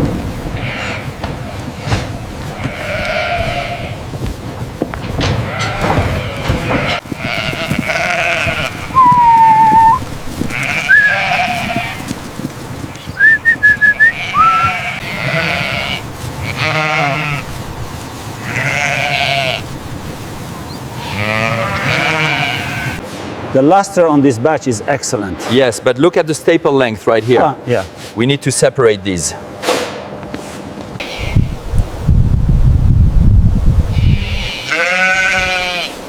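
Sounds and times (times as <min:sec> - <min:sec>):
sheep bleating: 0:02.6 - 0:04.0, 0:05.5 - 0:12.1, 0:13.2 - 0:17.5, 0:18.4 - 0:19.6, 0:21.0 - 0:23.0, 0:33.9 - 0:36.0
whistled notes: 0:09.0 - 0:10.0, 0:10.9 - 0:11.2, 0:13.1 - 0:14.7.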